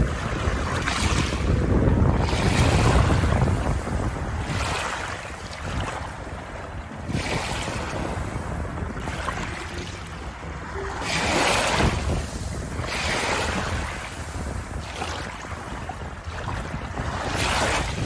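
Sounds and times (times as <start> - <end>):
waves washing in: 0.0 - 18.0.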